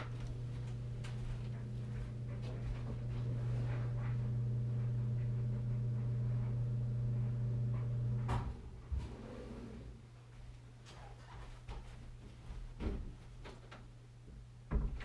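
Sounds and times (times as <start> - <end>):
steady low hum: 0.0 - 10.8.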